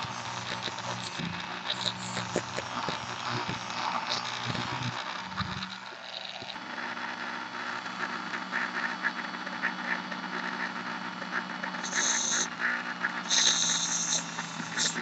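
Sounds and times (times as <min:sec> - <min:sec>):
rotary tool motor hum: 0:00.0 - 0:06.7, 0:11.8 - 0:12.5, 0:13.2 - 0:15.0.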